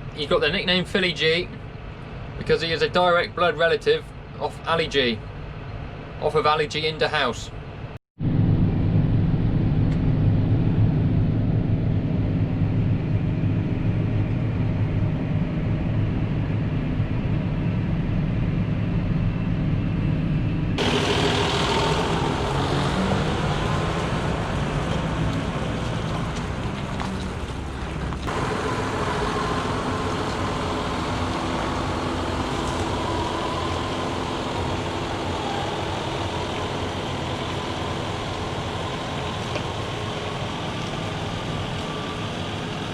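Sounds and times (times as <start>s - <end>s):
diesel farm machinery running: 18.2s - 42.9s.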